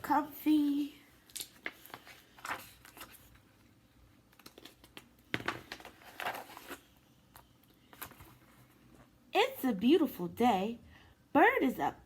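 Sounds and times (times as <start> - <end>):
soft rustling and handling: 0.0 - 9.3.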